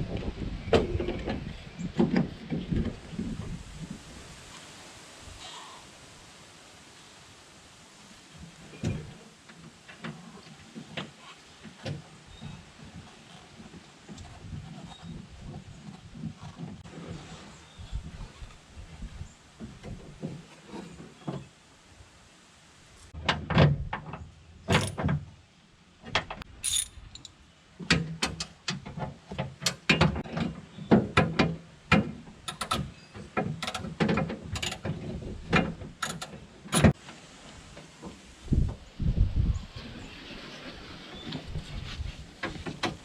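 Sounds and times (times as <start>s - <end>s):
door handle parts clicking: 24.7s - 25.0s, 32.5s - 32.9s, 36.0s - 36.9s.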